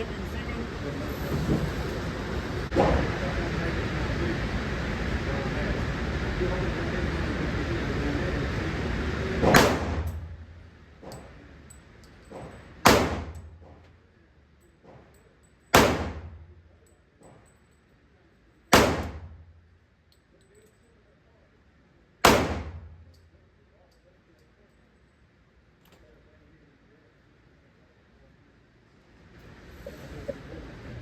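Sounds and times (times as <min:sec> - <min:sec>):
handgun shots echoing: 0:09.4 - 0:10.2, 0:12.8 - 0:13.5, 0:15.7 - 0:16.4, 0:18.7 - 0:19.3, 0:22.2 - 0:22.9.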